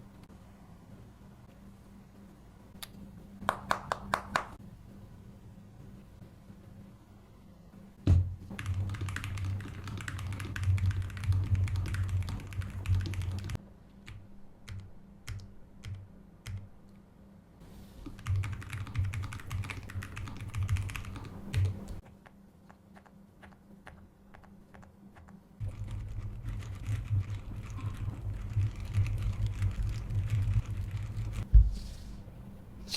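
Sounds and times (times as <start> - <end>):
heavy thump: 8.0 - 8.4, 31.4 - 32.0
mechanical keyboard typing: 8.5 - 16.6, 18.1 - 22.0, 24.7 - 31.4.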